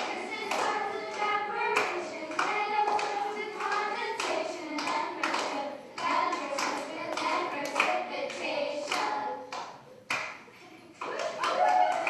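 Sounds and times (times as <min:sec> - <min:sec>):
children singing: 0:00.0 - 0:09.6
rhythmic hand claps: 0:00.0 - 0:12.0.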